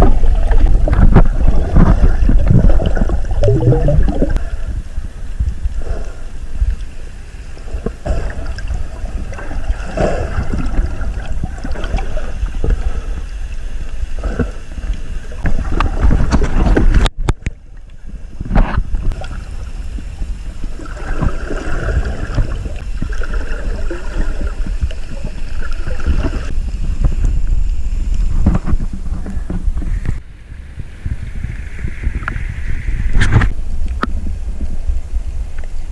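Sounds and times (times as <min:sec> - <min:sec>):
sea water sloshing and splashing: 0:00.0 - 0:04.8, 0:06.7 - 0:27.2
wind buffeting microphone: 0:24.5 - 0:35.9.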